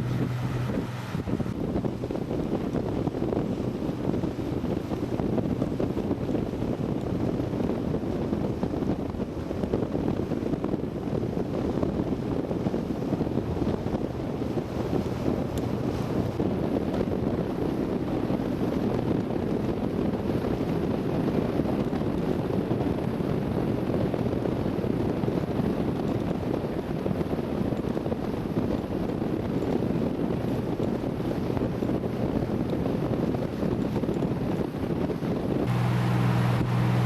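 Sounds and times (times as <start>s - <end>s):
boat engine droning: 0.0s - 23.7s, 24.5s - 37.0s
wind buffeting microphone: 0.0s - 37.0s.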